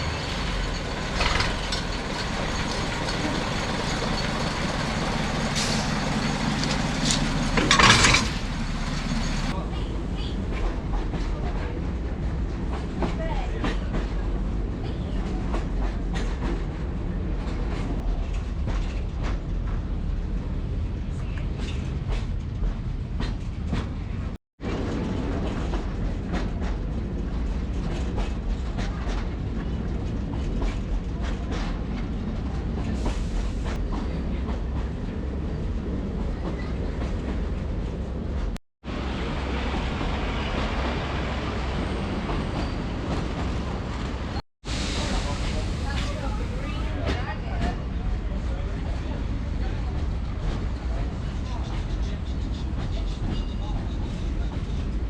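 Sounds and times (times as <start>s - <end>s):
wheels clattering over rail joints: 0.0s - 9.6s
train rumbling along track: 0.0s - 55.0s.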